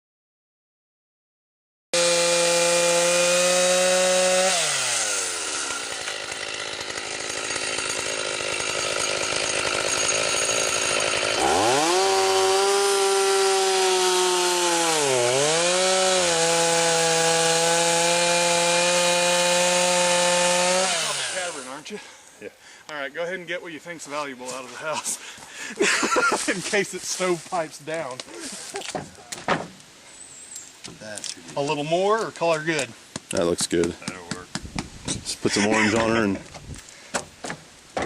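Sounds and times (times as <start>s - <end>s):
chainsaw cutting wood: 2.0s - 22.0s.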